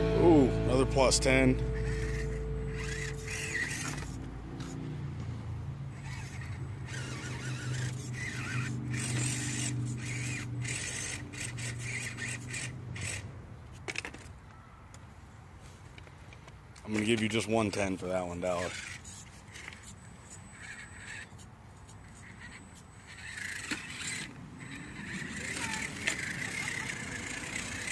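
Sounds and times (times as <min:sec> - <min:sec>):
electric motor and gearbox whining: 0:00.0 - 0:14.4, 0:16.8 - 0:27.9
squeals and scrapes: 0:01.6 - 0:05.0, 0:05.9 - 0:14.3, 0:18.4 - 0:27.9.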